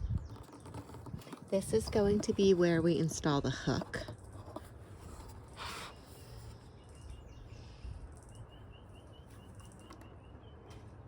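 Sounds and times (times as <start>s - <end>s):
handling rustle: 0.2s - 7.0s.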